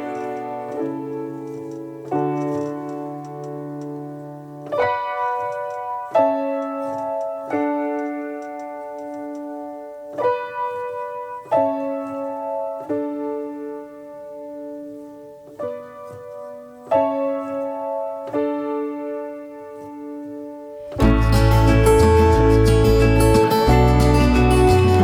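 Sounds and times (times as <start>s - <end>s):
slow piano chords: 0.0s - 25.0s.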